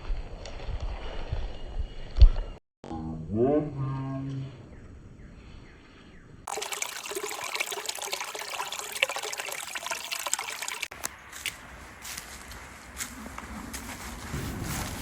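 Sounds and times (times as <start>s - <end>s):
water trickling: 6.5s - 11.0s.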